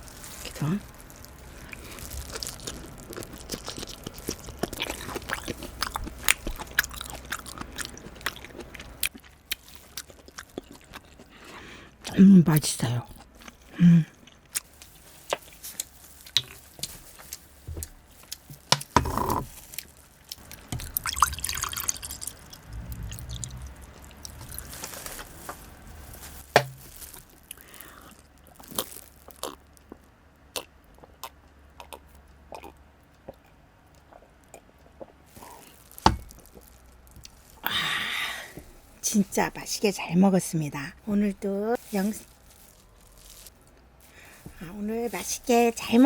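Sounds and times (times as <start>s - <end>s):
wet chewy mouth sounds: 1.6s - 12.2s, 20.3s - 25.2s.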